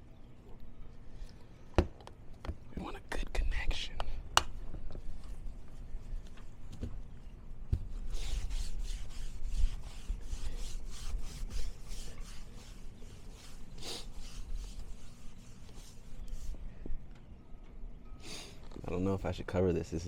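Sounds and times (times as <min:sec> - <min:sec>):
hand rubbing boat hull: 0:07.8 - 0:16.6.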